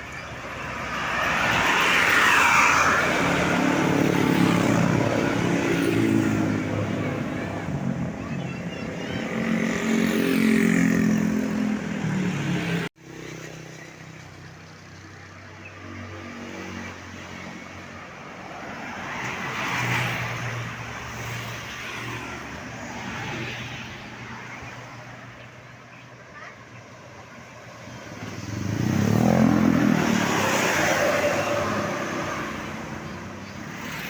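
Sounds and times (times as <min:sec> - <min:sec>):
road traffic: 0:00.0 - 0:34.0
vehicle passing: 0:00.6 - 0:13.4, 0:27.5 - 0:34.0.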